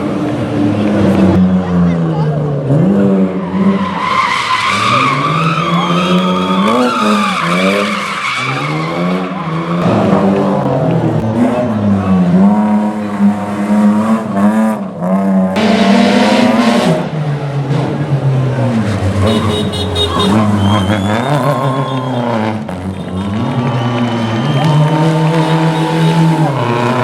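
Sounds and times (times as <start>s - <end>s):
rally car engine revving: 0.0s - 27.0s
tyres squealing: 19.2s - 22.2s.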